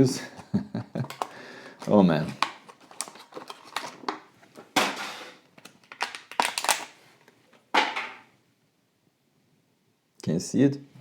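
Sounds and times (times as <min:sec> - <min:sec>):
packaging crackling: 0:01.0 - 0:07.0.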